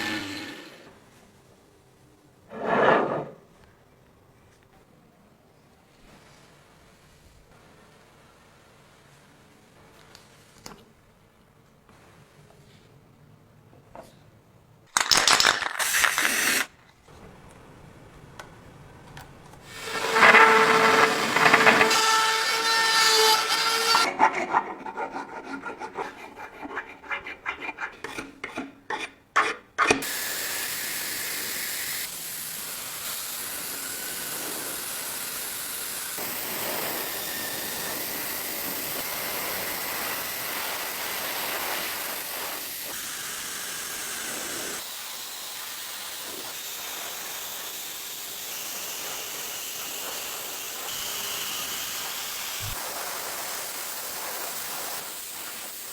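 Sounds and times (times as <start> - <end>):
small motor whine: 0.0 - 0.9, 19.7 - 24.1
rhythmic sanding strokes: 19.7 - 27.9
steady hiss: 30.0 - 55.9.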